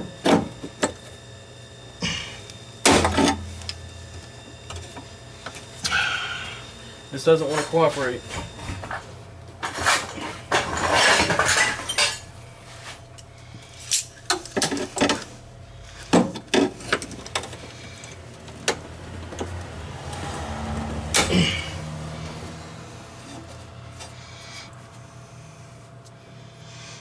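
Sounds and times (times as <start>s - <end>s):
metal clinks and scraping: 9.6s - 12.3s, 13.2s - 14.9s.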